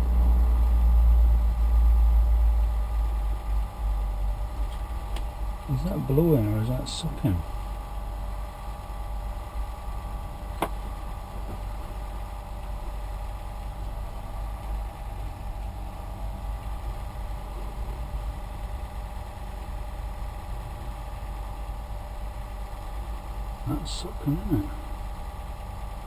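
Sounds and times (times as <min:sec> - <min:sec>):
cooling fans humming and whining: 0:00.0 - 0:26.0.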